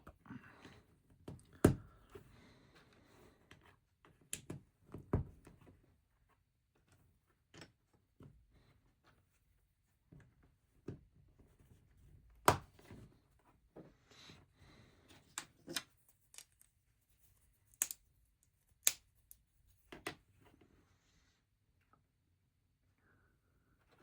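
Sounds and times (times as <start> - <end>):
plastic bricks clicking together: 15.4 - 16.7, 17.7 - 18.0, 18.8 - 19.4.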